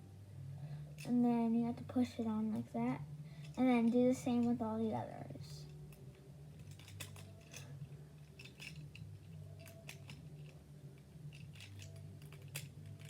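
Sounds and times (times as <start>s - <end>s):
low steady hum: 0.0s - 13.0s
plastic cube pieces clicking: 5.9s - 7.7s, 8.3s - 10.6s, 11.3s - 13.0s.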